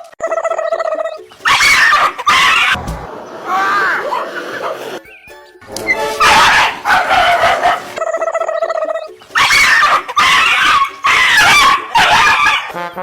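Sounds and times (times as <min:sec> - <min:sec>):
dog whining: 0:01.4 - 0:02.8, 0:09.4 - 0:12.7
dog vocalizing loudly: 0:06.2 - 0:08.0.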